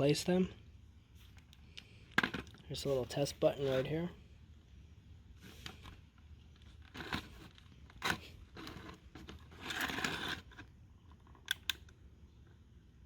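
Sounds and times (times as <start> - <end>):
plastic scraping and crunching: 6.6 - 11.4
sharp plastic clicks: 11.4 - 12.0.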